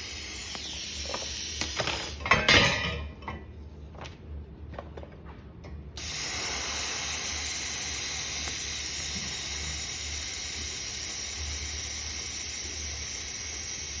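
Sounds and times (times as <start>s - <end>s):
welding arc hissing: 0.0s - 2.3s, 6.0s - 14.0s.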